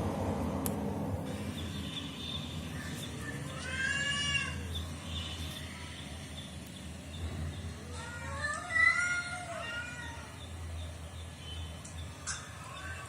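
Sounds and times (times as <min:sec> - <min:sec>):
steady low hum: 0:00.0 - 0:08.6.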